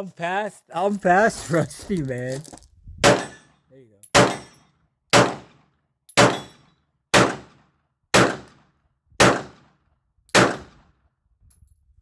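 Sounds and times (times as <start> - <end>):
handgun shots: 3.0 - 3.4, 4.1 - 5.5, 6.2 - 6.6, 7.2 - 7.5, 8.2 - 8.5, 9.2 - 9.6, 10.3 - 10.7.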